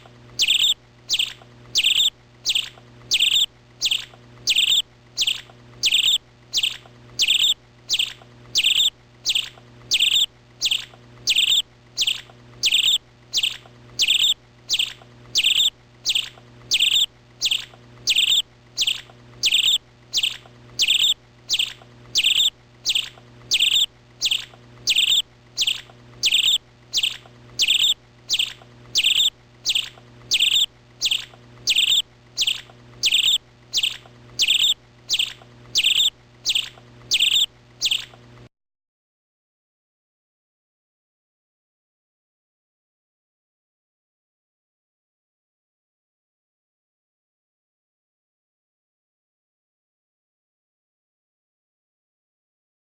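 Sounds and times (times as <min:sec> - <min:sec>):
faint low hum: 0:00.0 - 0:38.5
bird chirping: 0:00.4 - 0:38.2.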